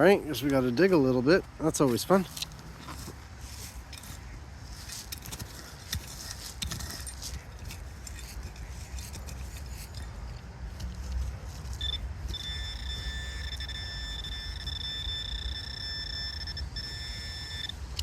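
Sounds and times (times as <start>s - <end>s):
digging scraping and knocks: 1.7s - 13.2s
pinpointer high-pitched tone: 11.8s - 17.9s.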